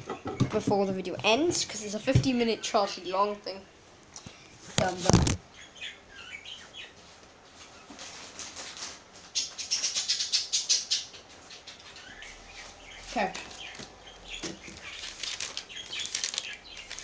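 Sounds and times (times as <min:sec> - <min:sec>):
rustling and crinkling: 0:04.1 - 0:05.4, 0:06.8 - 0:09.8, 0:11.3 - 0:17.0
rapid crackles: 0:12.3 - 0:17.0.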